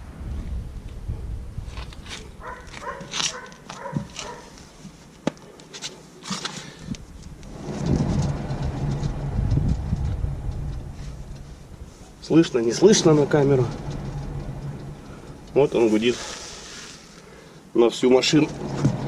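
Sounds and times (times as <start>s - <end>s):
handling clicks and knocks: 1.8s - 7.4s
wheel bearing rumbling: 6.8s - 19.0s.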